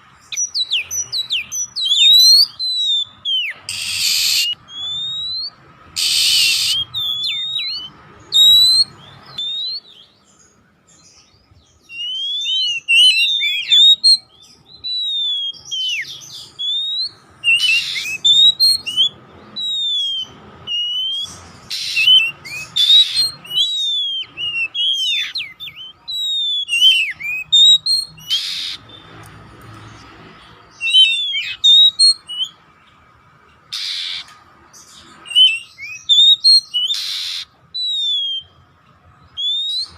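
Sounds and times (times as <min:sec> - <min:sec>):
harsh rasping bird calls: 0:00.0 - 0:39.9
magpie-robin whistled song: 0:00.0 - 0:39.9.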